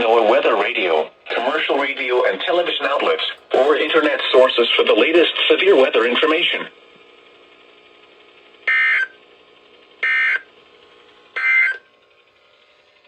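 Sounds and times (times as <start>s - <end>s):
radio hiss: 0.0s - 6.7s.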